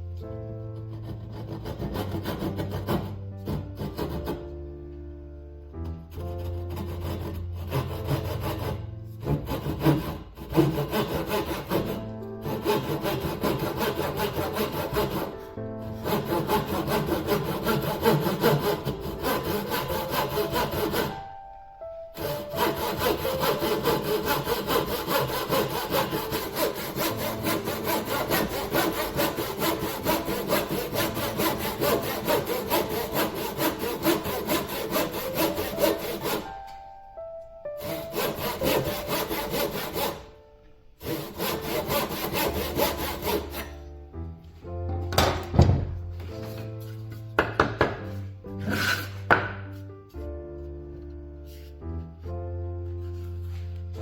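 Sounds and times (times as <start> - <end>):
hand saw cutting wood: 0.8 - 4.5, 6.1 - 21.2, 22.1 - 36.8, 37.8 - 43.9, 46.3 - 49.8.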